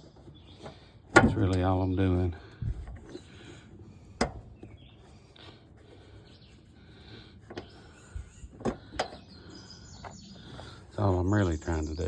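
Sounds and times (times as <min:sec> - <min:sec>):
bolts clicking and tapping: 0:00.0 - 0:05.5, 0:07.4 - 0:10.9.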